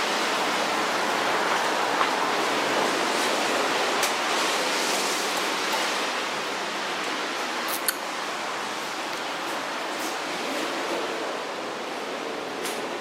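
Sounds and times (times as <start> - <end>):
steady rushing outdoor noise: 0.0 - 13.0.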